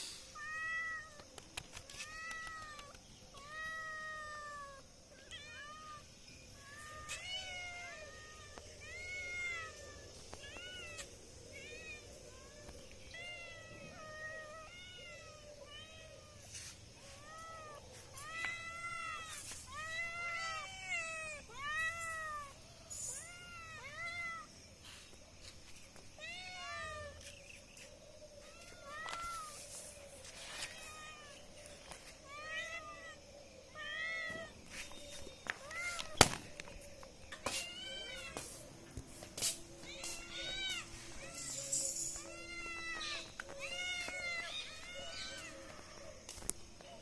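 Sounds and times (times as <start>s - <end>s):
cats meowing: 0.3s - 24.6s, 26.2s - 27.3s, 28.4s - 34.7s, 35.5s - 36.3s, 37.3s - 39.0s, 39.8s - 46.4s.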